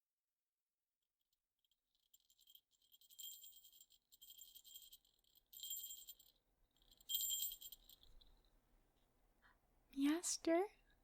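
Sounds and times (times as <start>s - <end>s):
jingle bells shaken: 2.1s - 8.4s.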